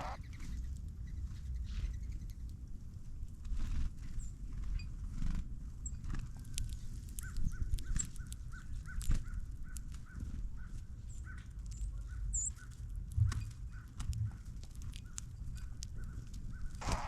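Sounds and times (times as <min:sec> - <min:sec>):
high bird chirps: 0:00.0 - 0:00.5.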